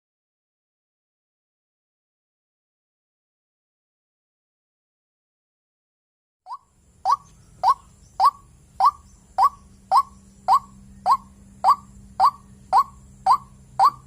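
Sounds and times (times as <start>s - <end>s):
waterhen calling: 6.5s - 14.0s.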